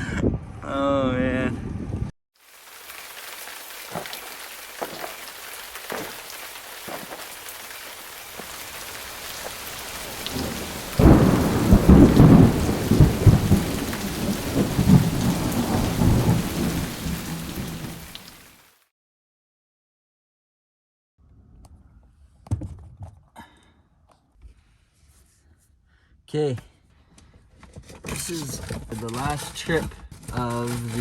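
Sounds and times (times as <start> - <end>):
steady rain hiss: 2.4 - 18.8
rumbling thunder roll: 8.4 - 18.4.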